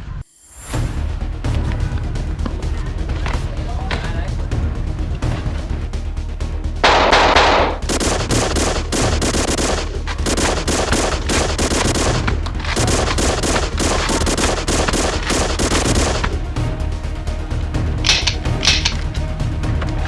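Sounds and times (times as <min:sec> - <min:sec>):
loud blast: 0:06.8 - 0:16.4
rapid automatic gunfire: 0:06.8 - 0:16.4.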